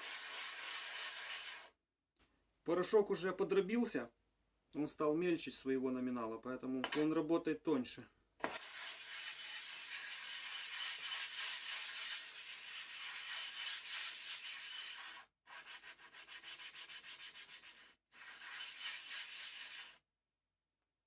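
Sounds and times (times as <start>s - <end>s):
sharpening stone gritty rubbing: 0.1s - 1.7s, 8.4s - 20.0s.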